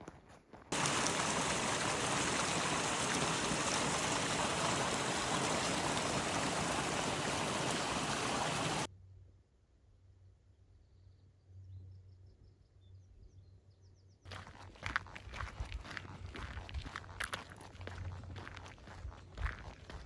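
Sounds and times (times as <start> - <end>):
stream rushing water: 0.7 - 8.9.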